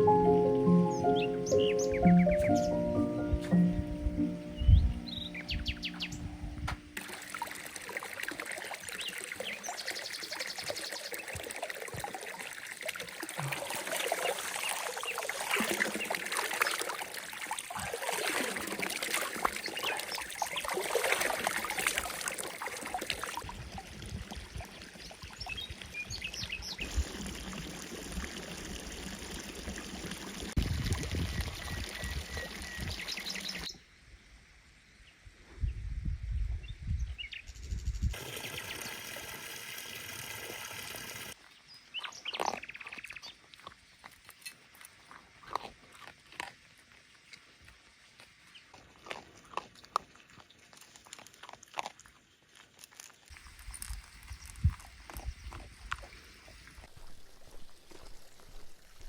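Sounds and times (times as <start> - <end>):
music: 0.0 - 6.9
birds chirping: 0.0 - 7.0, 31.9 - 33.8.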